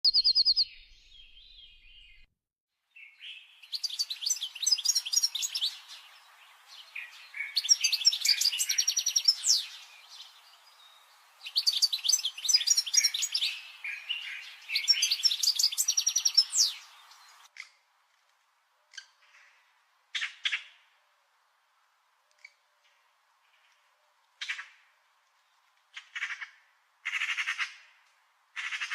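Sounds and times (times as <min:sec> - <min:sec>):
songbird chirping trills: 0:00.0 - 0:02.3, 0:03.0 - 0:17.5.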